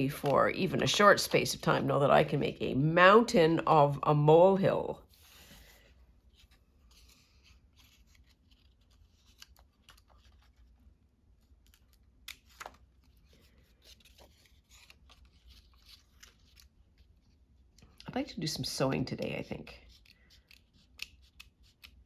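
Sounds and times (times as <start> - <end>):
scissors cutting paper: 19.8 - 22.0.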